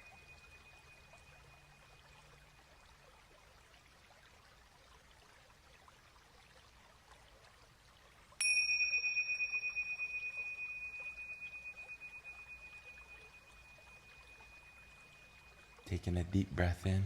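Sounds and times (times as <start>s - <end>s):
meditation chime ringing: 0.0s - 2.6s, 8.4s - 16.4s.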